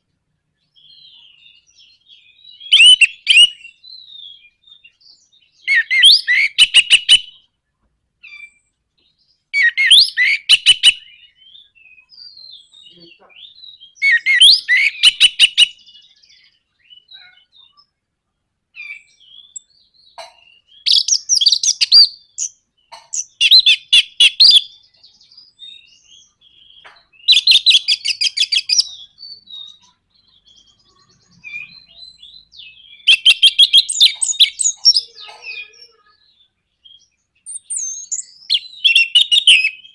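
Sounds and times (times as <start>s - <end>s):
thrush singing whistled notes: 0.7s - 7.4s, 8.3s - 12.8s, 13.5s - 17.2s, 20.6s - 35.1s, 36.2s - 39.9s.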